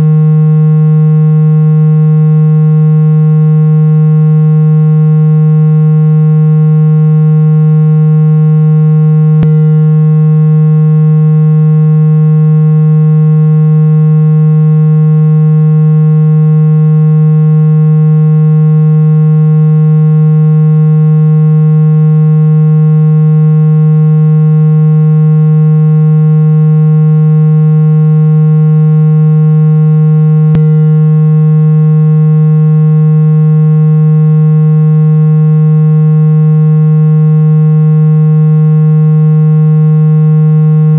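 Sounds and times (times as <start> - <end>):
steady electronic tone: 0.0 - 16.8, 27.2 - 35.6, 37.7 - 40.9.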